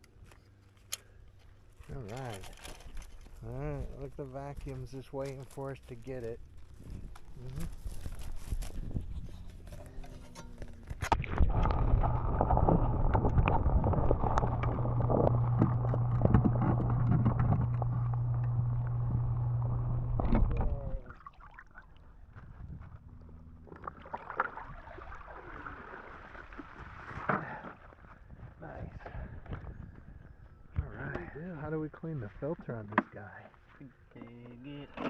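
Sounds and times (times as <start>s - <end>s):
low machine hum: 1.9s - 25.8s
water splashing and pouring: 11.0s - 18.1s, 23.7s - 27.8s.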